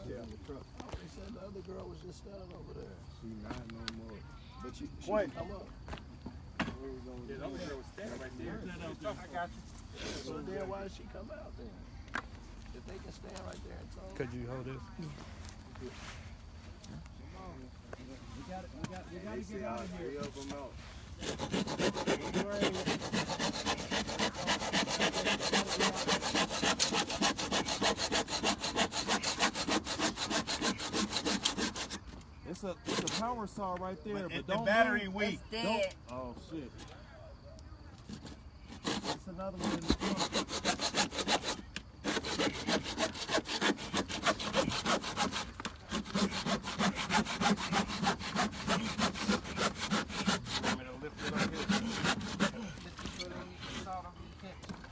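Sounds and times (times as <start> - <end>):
saw cutting wood: 20.3 - 32.1, 32.7 - 33.4, 38.1 - 54.0.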